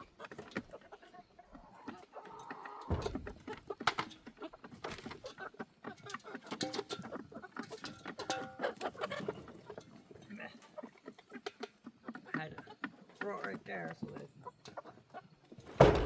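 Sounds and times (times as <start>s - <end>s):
chickens clucking: 0.0s - 16.0s
low thump: 15.7s - 16.0s.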